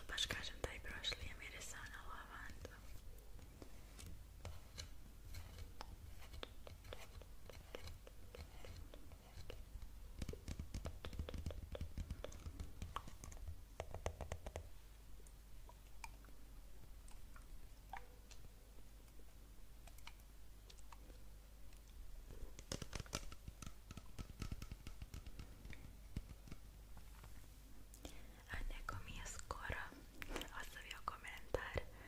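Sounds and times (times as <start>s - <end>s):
person whispering: 0.0s - 3.1s, 28.3s - 32.0s
small sharp clicks and taps: 3.4s - 14.7s, 21.7s - 28.1s.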